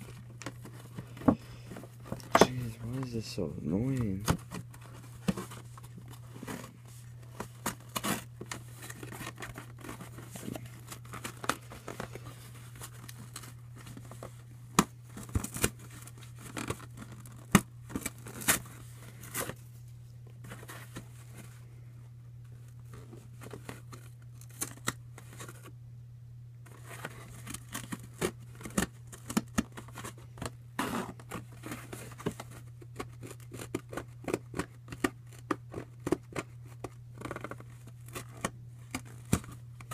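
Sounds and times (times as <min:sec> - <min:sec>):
cardboard being cut and torn: 0:30.8 - 0:31.5.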